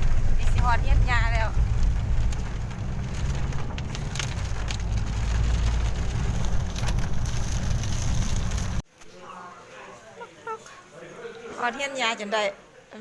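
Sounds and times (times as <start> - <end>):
sharp ticks and crackles: 0.0 - 8.8
vehicle rumbling on wet road: 0.0 - 8.8.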